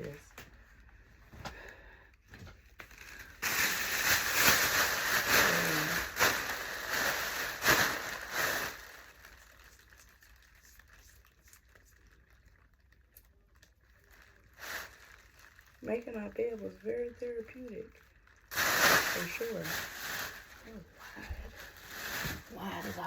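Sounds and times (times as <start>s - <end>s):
close rustling and handling: 0.0s - 23.0s
sharp crackles: 2.7s - 20.9s.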